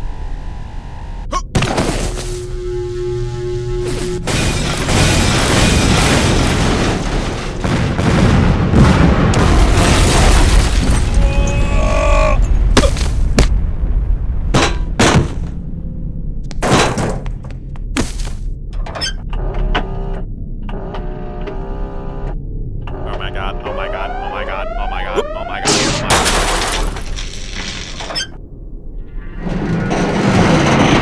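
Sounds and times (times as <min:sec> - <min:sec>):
booming explosions with deep rumble: 0:04.9 - 0:11.7.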